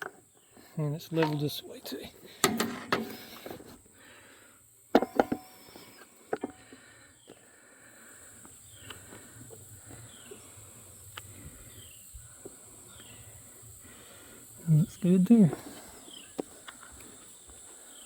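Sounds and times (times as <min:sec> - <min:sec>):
sharp knocks and clicks: 0:02.4 - 0:03.2
high-pitched insect drone: 0:08.1 - 0:18.0.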